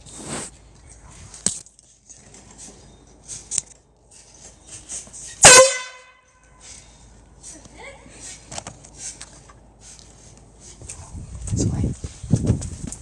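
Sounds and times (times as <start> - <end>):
canned air horn blast: 5.4 - 6.3.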